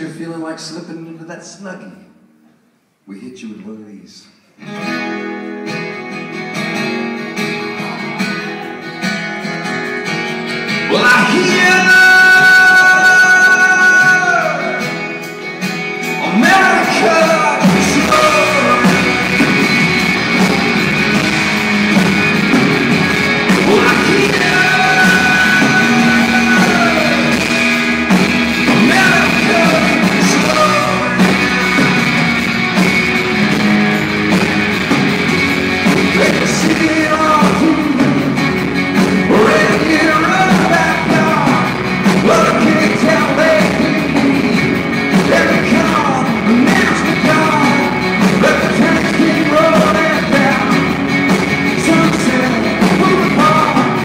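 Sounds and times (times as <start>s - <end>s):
live rock band playing: 4.5s - 54.0s
male lead vocal singing: 10.9s - 14.9s, 16.1s - 19.3s, 23.4s - 32.4s, 36.0s - 38.4s, 39.2s - 51.0s, 51.7s - 54.0s.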